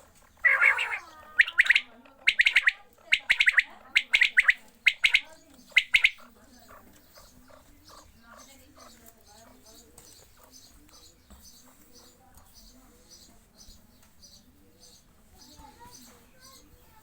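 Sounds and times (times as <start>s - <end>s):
quail calling: 0.0s - 9.0s.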